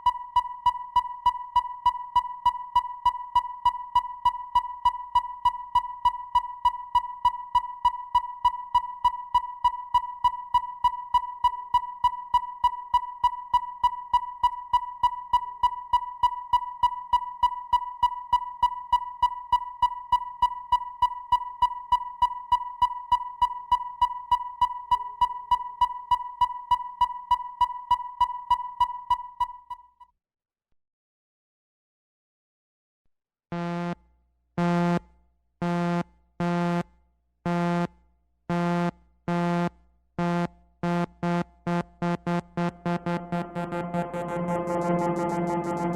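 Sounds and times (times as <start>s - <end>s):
rapid high-pitched electronic blips: 42.2s - 45.9s.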